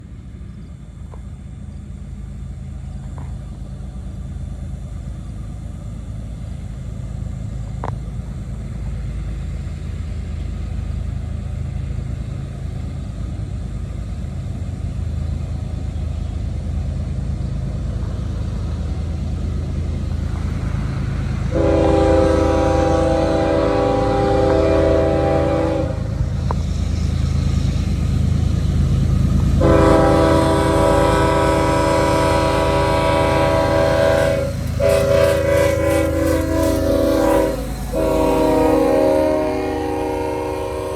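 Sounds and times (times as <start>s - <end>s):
freight train rumble: 0.0s - 40.9s
locomotive air horn chord: 21.5s - 26.2s, 29.6s - 40.9s.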